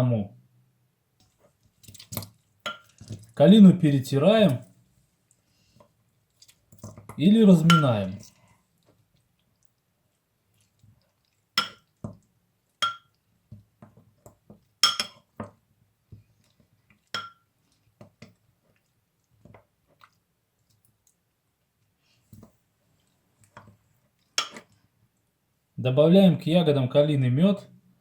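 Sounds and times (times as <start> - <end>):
utensil clinking against bowl: 7.6 - 8.0.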